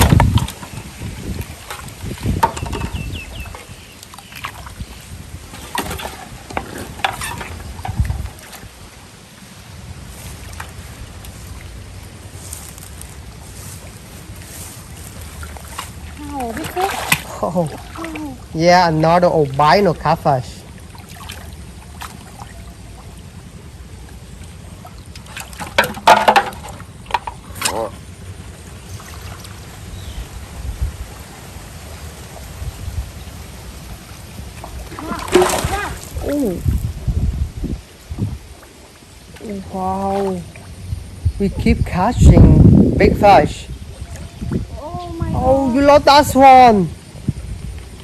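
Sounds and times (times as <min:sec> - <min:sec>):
wind on microphone: 0:00.0 - 0:18.6, 0:29.7 - 0:38.7, 0:39.5 - 0:48.0
water splashing: 0:00.0 - 0:37.1, 0:37.9 - 0:41.9, 0:43.2 - 0:48.0
water trickling: 0:00.0 - 0:48.0.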